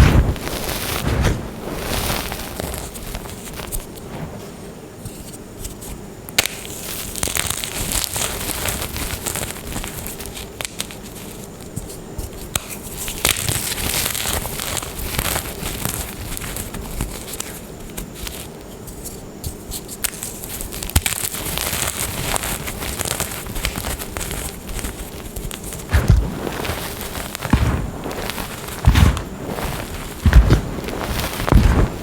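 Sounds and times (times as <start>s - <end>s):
chalk being crushed: 19.7s - 32.0s.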